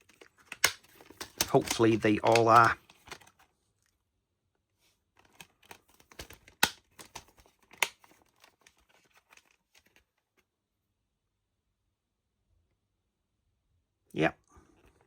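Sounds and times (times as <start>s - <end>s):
plastic case rattling: 0.0s - 3.4s.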